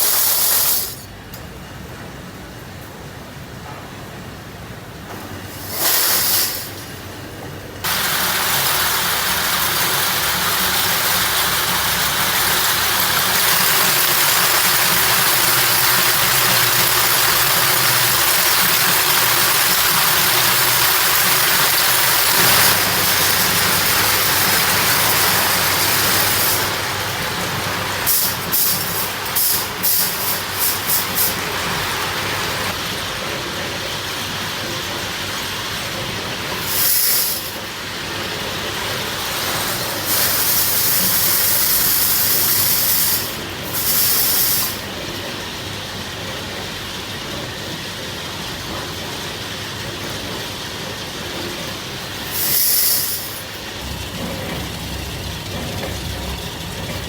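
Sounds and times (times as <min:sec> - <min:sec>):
factory machinery hissing rush: 0:00.0 - 0:01.2, 0:05.3 - 0:33.5, 0:34.6 - 0:45.8, 0:48.1 - 0:57.0.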